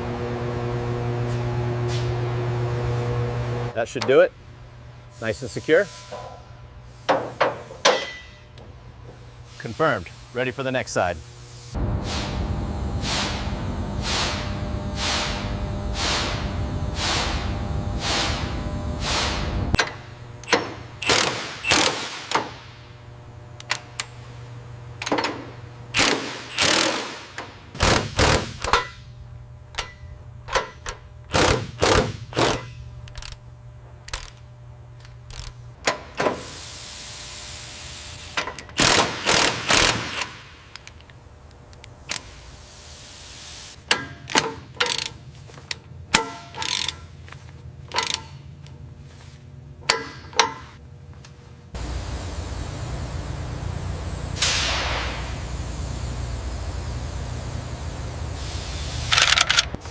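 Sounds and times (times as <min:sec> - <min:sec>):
steady low hum: 0:00.0 - 0:59.9
tool clanks and clicks on metal: 0:07.8 - 0:08.4, 0:19.8 - 0:22.6, 0:25.0 - 0:29.0, 0:29.7 - 0:34.4, 0:43.8 - 0:48.8, 0:49.8 - 0:50.8, 0:59.1 - 0:59.8
hiss: 0:18.0 - 0:19.4, 0:36.3 - 0:37.3, 0:54.4 - 0:55.4.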